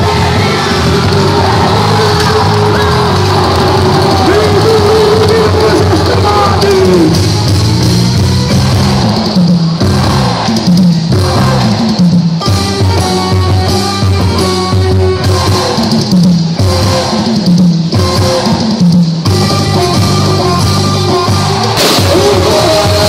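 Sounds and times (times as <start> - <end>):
band music: 0.0 - 23.0
bass line: 0.0 - 23.0
drums: 0.0 - 23.0.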